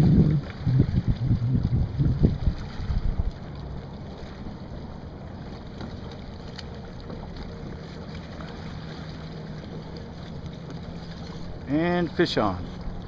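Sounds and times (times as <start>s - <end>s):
wind noise on microphone: 0.0s - 3.4s
boat motor humming: 0.0s - 13.0s.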